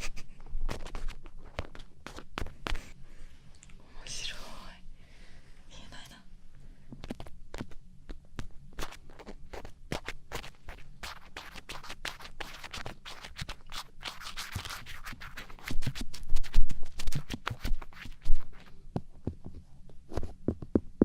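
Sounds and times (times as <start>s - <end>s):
scratching and rubbing on wood: 0.0s - 3.0s, 8.4s - 18.8s.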